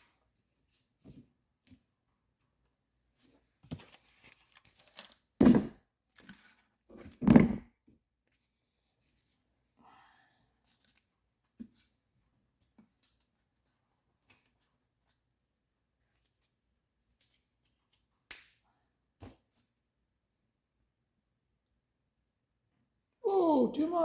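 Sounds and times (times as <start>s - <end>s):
faint clicks of handled parts: 3.6s - 5.2s, 10.6s - 11.2s, 13.9s - 15.2s, 16.1s - 18.6s.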